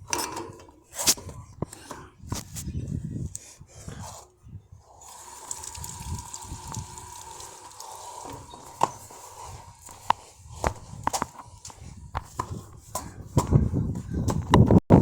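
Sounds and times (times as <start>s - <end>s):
water running through a hose: 4.8s - 10.8s.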